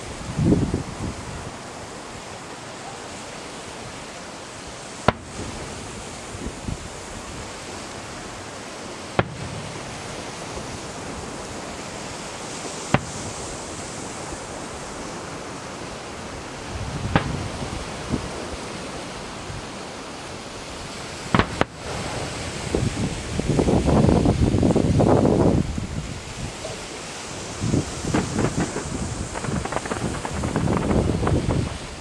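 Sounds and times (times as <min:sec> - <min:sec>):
steady hiss: 0:00.0 - 0:32.0
fireworks cracking: 0:04.6 - 0:15.1, 0:16.2 - 0:19.0, 0:21.0 - 0:24.0, 0:26.6 - 0:32.0.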